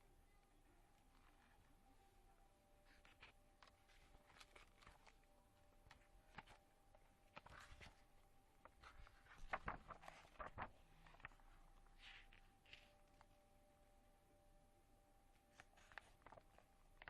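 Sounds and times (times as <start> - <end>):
notebook packaging clicks and rustles: 2.8 - 13.4, 15.4 - 17.0.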